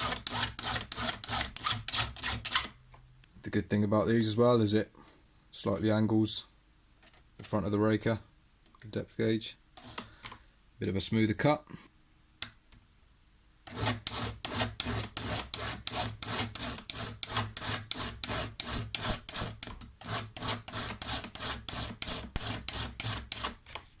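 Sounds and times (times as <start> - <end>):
file scraping chainsaw chain: 0.0 - 2.7, 13.7 - 23.6.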